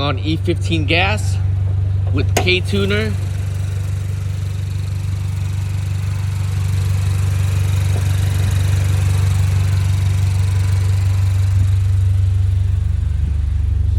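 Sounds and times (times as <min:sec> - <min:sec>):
car engine droning: 0:00.0 - 0:13.9.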